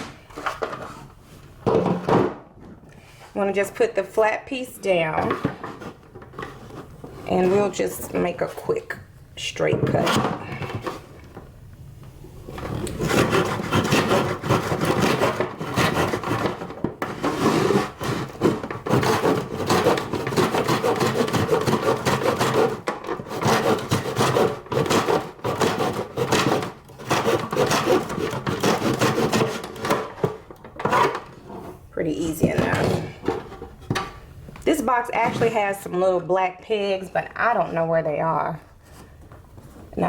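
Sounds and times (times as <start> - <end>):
hand saw cutting wood: 12.7 - 30.1.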